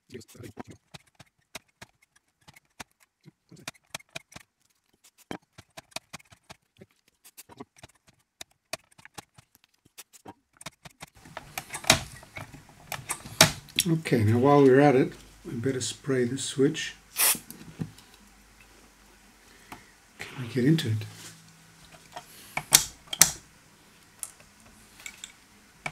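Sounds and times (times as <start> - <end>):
tools clicking and tapping: 10.2 - 13.8, 21.9 - 23.4, 25.0 - 25.9.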